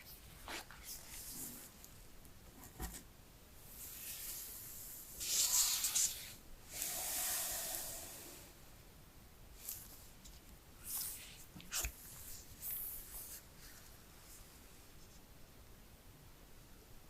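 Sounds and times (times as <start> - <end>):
hissy rubbing scrapes of packaging: 3.7 - 8.6.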